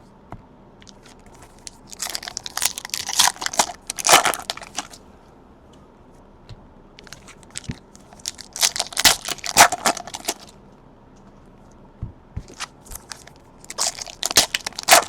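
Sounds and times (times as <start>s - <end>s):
plastic wrapping crackling: 0.8s - 5.0s, 7.0s - 10.5s, 12.5s - 15.0s.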